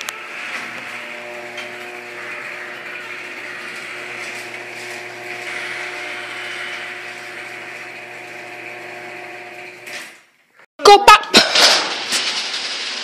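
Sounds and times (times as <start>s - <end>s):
garage door opener running: 0.0s - 10.3s.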